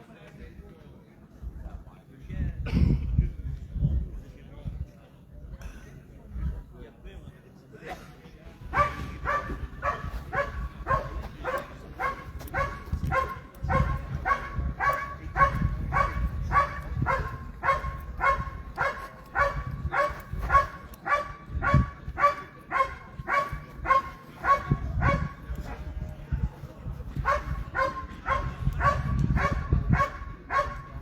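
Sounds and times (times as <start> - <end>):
dog barking: 8.7 - 25.8, 27.2 - 31.0.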